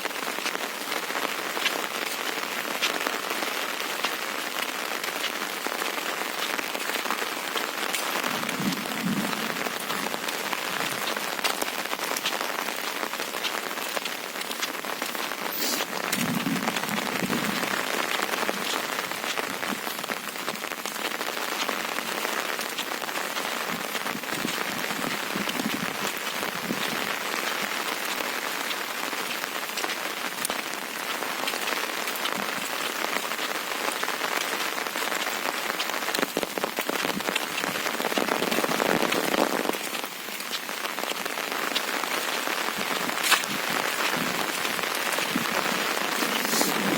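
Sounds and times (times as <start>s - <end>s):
wind gusts buffeting microphone: 8.2s - 11.3s, 15.8s - 17.9s, 42.8s - 46.9s.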